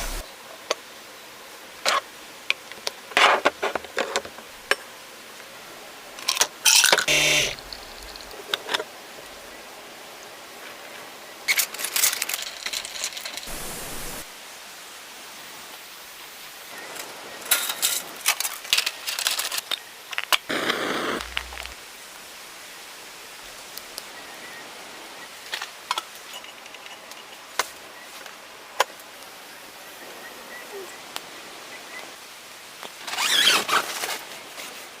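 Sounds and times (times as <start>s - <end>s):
steady hiss: 0.0s - 35.0s
rustling and handling noise: 11.5s - 14.3s, 17.0s - 21.8s.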